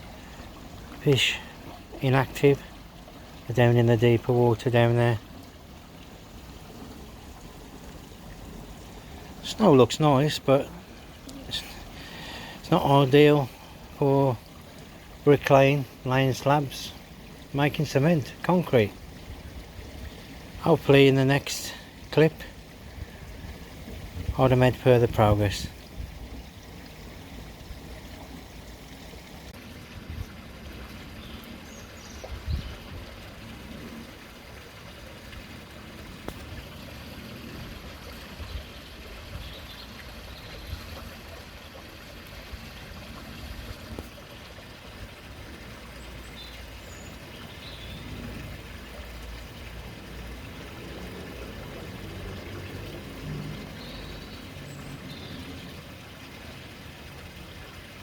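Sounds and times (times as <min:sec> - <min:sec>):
water trickling into pond: 0:00.0 - 0:58.0.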